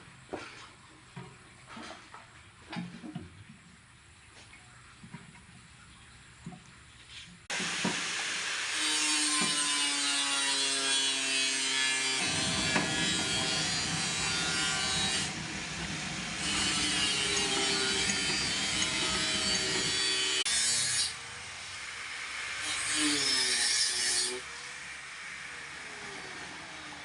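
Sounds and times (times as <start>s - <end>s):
dense rasping cutting noise: 7.6s - 21.2s.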